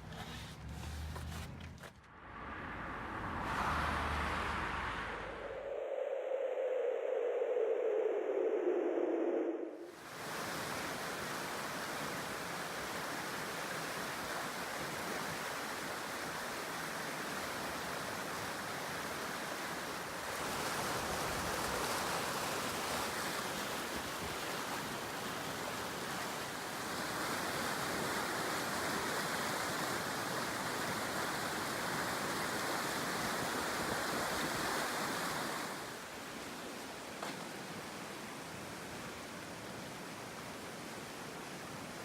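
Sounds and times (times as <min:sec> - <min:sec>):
river water rushing: 0:10.0 - 0:42.0.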